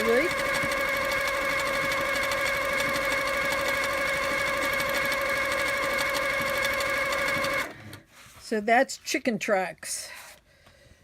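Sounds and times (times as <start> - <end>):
quilting machine stitching: 0.0 - 8.0.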